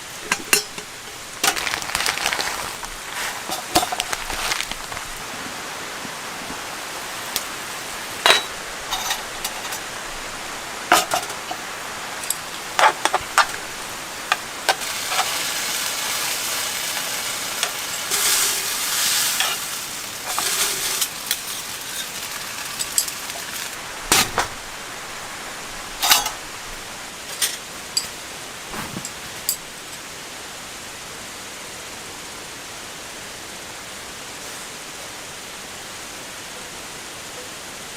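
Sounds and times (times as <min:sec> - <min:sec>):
raindrops ticking on a surface: 0:00.0 - 0:30.1
rain hiss: 0:00.0 - 0:37.9.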